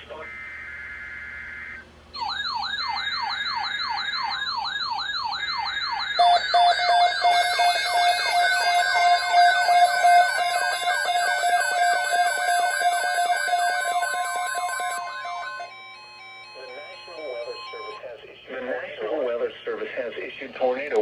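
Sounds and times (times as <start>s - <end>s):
buzzing data warble: 0.0s - 18.0s
electronic siren tone sweeping up: 0.2s - 15.8s
pulsing alarm beep: 0.2s - 18.0s.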